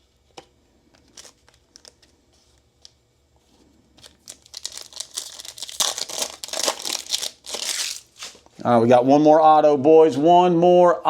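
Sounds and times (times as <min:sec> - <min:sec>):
plastic wrapper crinkling: 0:04.0 - 0:08.5.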